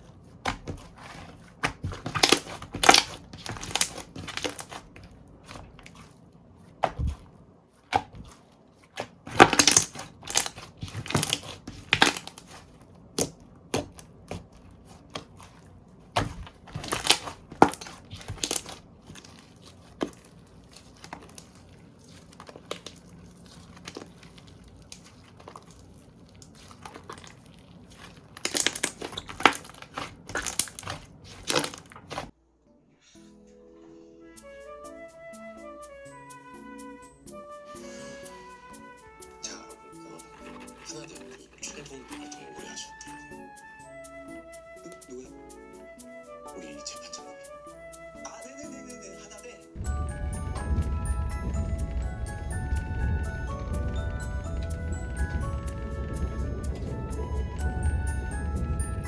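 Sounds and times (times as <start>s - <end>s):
slime squeezed crackling pops: 1.6s - 6.1s, 7.9s - 32.3s.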